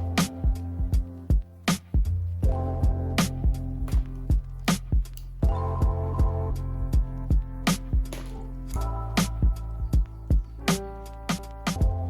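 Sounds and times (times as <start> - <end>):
music with low drum beat: 0.0 - 12.0.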